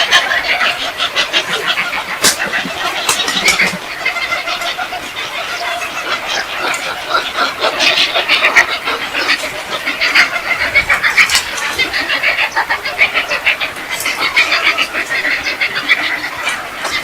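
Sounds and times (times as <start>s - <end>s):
flock of birds squawking: 0.0s - 17.0s.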